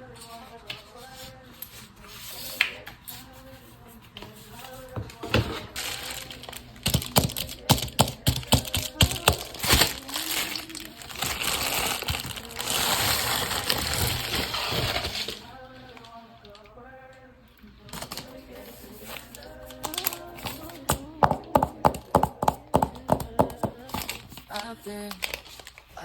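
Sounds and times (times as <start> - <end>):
faint background music: 0.0 - 26.0
packaging rustling: 4.7 - 16.7, 17.9 - 21.6, 23.3 - 26.0
packaging clicks and taps: 6.1 - 11.2, 19.4 - 25.8.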